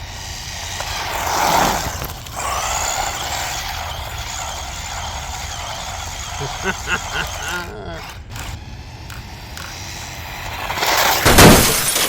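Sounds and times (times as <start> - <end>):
electric motor whining: 0.0 - 11.3.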